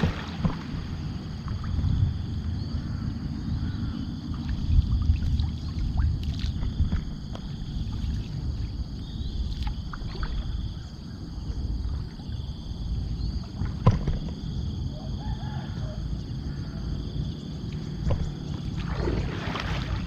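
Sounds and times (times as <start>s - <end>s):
water sloshing around boat: 0.0s - 14.9s, 17.2s - 20.0s
knocks against boat: 13.6s - 14.4s, 18.0s - 18.6s.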